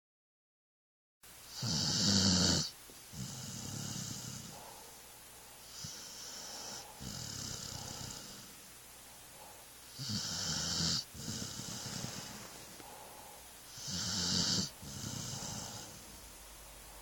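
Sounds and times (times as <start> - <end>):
dog snoring: 1.5 - 5.0, 5.6 - 8.7, 9.4 - 16.2.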